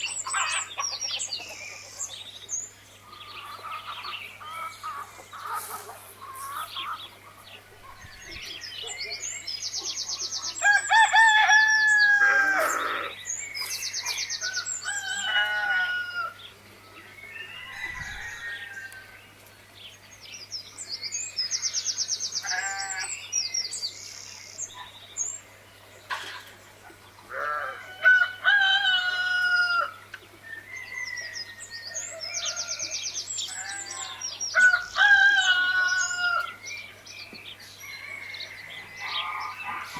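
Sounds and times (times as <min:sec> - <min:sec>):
roosters crowing: 0:00.0 - 0:02.3, 0:10.3 - 0:19.4, 0:22.4 - 0:23.2, 0:27.2 - 0:36.8, 0:37.6 - 0:39.9
chickens clucking: 0:00.1 - 0:02.3, 0:03.0 - 0:09.3.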